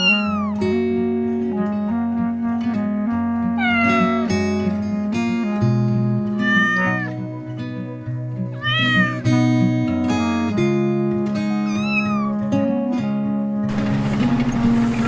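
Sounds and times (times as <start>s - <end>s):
cat meowing: 0.0s - 0.6s, 3.6s - 4.3s, 6.4s - 7.2s, 8.6s - 9.4s, 11.6s - 12.4s
plucked-string background music: 0.0s - 15.0s.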